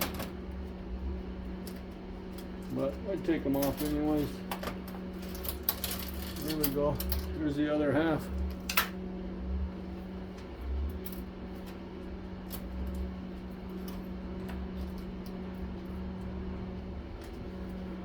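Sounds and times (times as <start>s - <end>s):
low hum: 0.0s - 18.0s
metal parts clicking: 2.4s - 4.3s, 5.2s - 7.4s.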